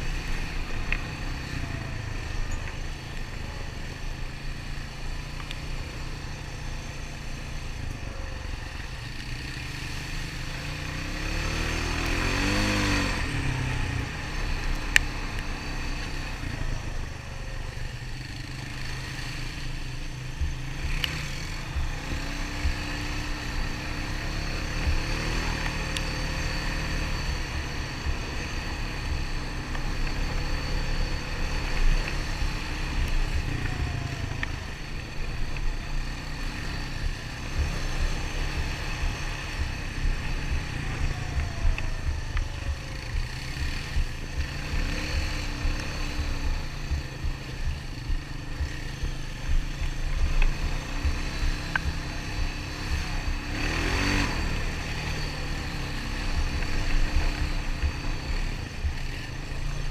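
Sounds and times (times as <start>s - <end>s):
atv engine revving: 0.0s - 59.9s
sharp ticks: 4.6s - 6.4s, 18.0s - 59.9s.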